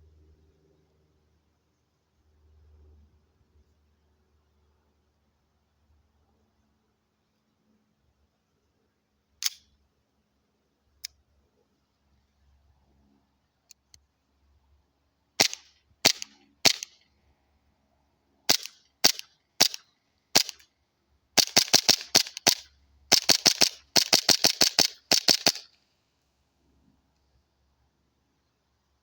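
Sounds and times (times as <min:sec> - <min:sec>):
airsoft pistol firing: 0:15.4 - 0:17.0, 0:18.5 - 0:20.6, 0:21.4 - 0:25.7.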